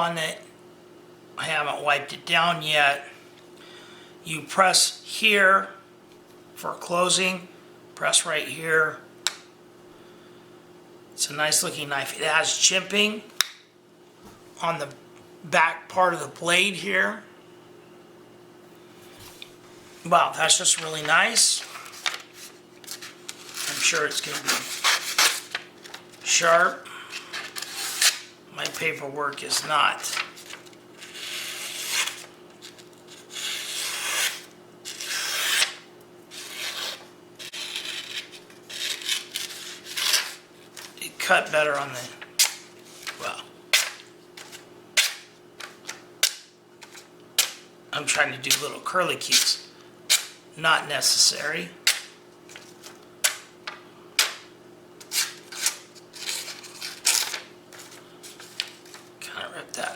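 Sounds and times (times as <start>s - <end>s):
knife slicing through paper: 21.6s - 26.0s, 29.4s - 40.9s.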